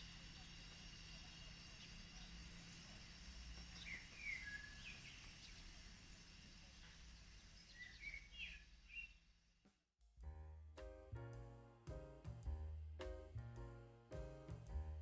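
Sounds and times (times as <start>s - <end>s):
small birds chirping: 3.6s - 5.7s, 7.5s - 9.2s.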